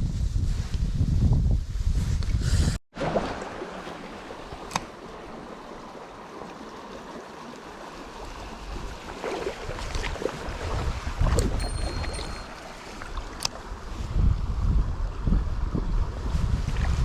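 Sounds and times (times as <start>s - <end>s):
mountain stream flowing: 3.0s - 14.1s.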